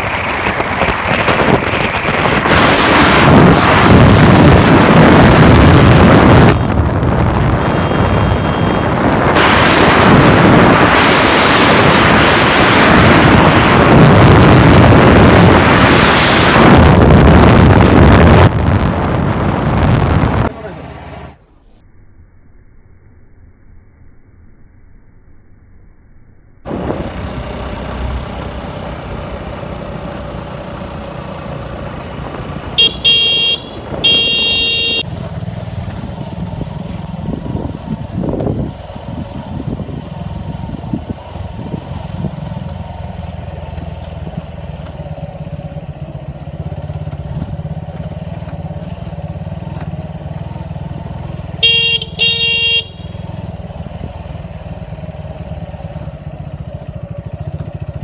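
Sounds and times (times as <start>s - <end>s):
motorcycle engine running: 0.0s - 10.9s, 26.7s - 58.0s
horn honking: 5.6s - 10.0s, 30.6s - 35.2s, 51.4s - 53.8s.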